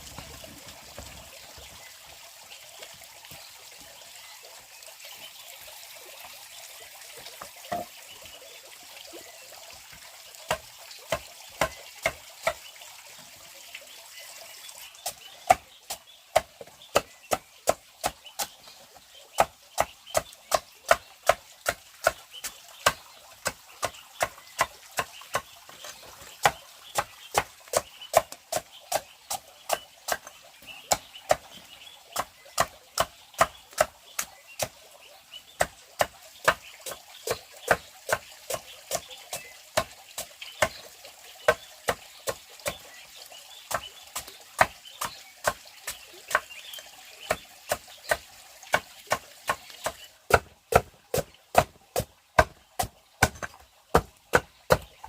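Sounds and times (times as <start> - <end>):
blade chopping wood: 48.1 - 55.0.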